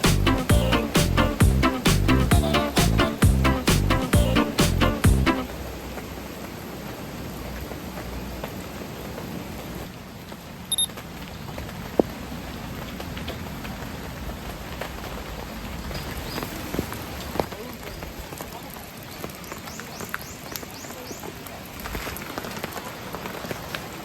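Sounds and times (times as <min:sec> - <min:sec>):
music: 0:00.0 - 0:05.5
steady rain falling: 0:00.0 - 0:24.0.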